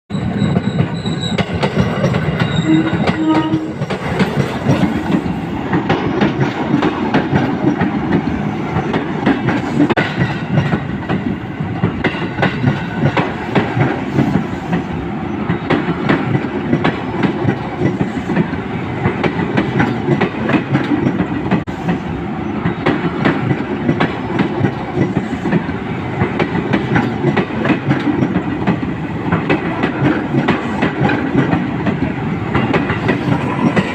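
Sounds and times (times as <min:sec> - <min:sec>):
train wheels clacking on track: 0:00.1 - 0:33.9
brief tone: 0:02.4 - 0:03.6.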